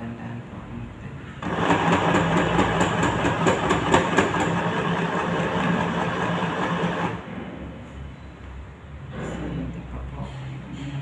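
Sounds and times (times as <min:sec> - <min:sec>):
sewing machine motor hum: 0:01.4 - 0:07.2.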